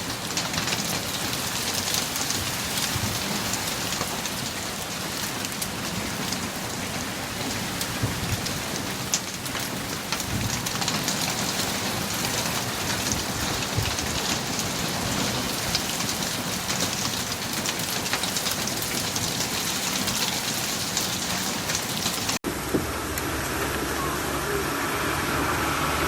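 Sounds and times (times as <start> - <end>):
heavy rain on hard surface: 0.0 - 26.0.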